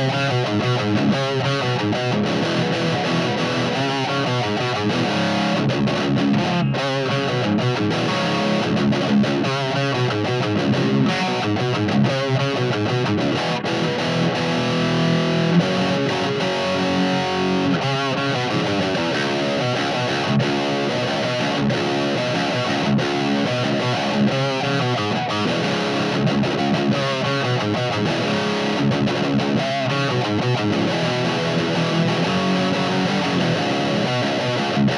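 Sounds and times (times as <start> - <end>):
distorted electric guitar riff: 0.0 - 34.9.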